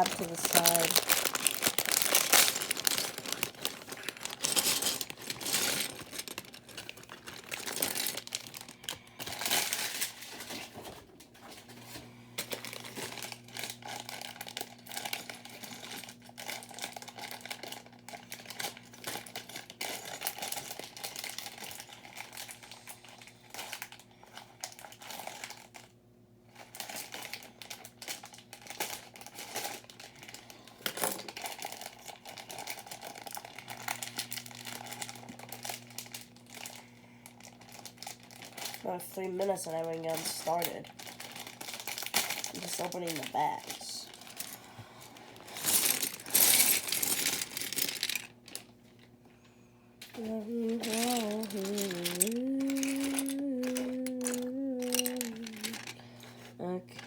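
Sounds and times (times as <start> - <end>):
plastic bags tearing and crinkling: 0.0 - 11.7, 12.4 - 25.9, 26.5 - 49.1, 50.0 - 57.0.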